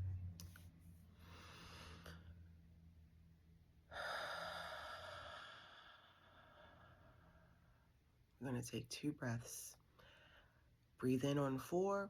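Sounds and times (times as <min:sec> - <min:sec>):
person breathing slowly: 0:01.1 - 0:02.4, 0:03.9 - 0:07.9.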